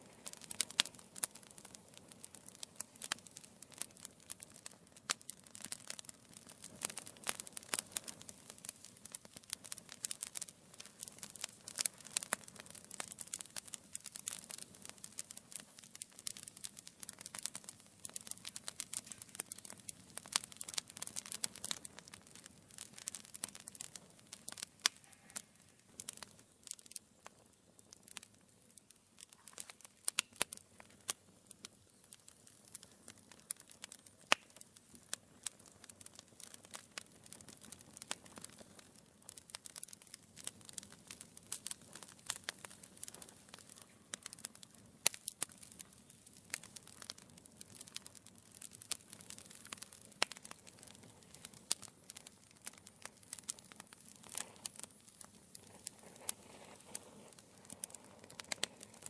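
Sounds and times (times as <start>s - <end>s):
sharp fire snaps: 0.0s - 59.0s
wood fire crackling: 0.0s - 59.0s
soft hiss: 53.0s - 59.0s.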